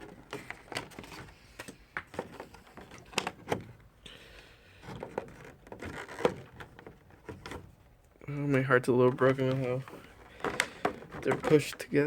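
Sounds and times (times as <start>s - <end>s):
plastic packaging clicks and taps: 10.3s - 11.5s.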